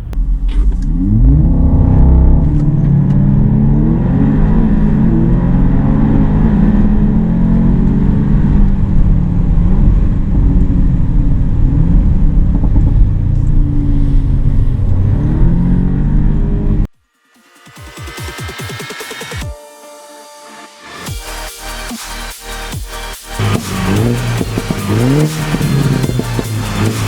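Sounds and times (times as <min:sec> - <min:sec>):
sports car engine revving: 0:00.0 - 0:16.9, 0:23.3 - 0:27.0.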